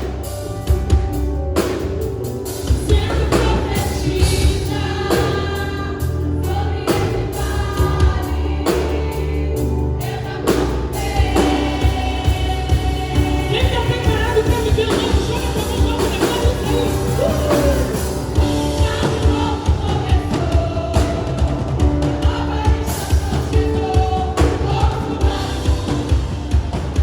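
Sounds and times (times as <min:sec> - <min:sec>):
bass: 0:00.0 - 0:27.0
gospel choir singing with band: 0:00.0 - 0:27.0
drum beat: 0:11.2 - 0:27.0.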